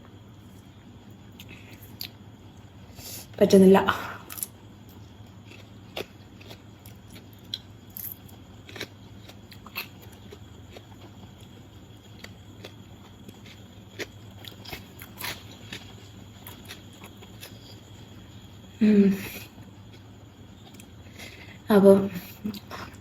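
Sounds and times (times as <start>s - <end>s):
person chewing food: 4.3s - 18.4s.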